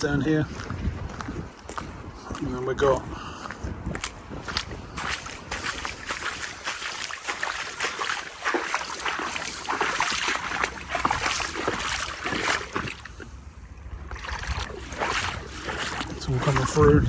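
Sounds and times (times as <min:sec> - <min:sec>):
floodwater splashing and rushing: 0:04.4 - 0:17.0.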